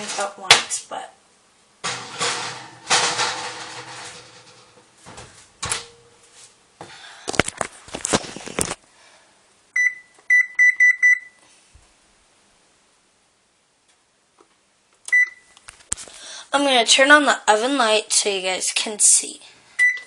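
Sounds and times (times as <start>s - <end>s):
oven door clunking: 1.8s - 6.2s
oven control panel beeps: 9.8s - 11.4s, 15.1s - 15.5s, 19.8s - 20.0s.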